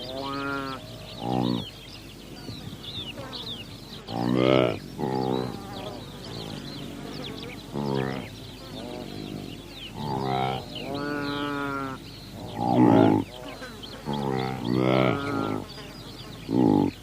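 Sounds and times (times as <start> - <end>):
animal bleat-like calls: 0.0 - 1.7, 7.7 - 15.7.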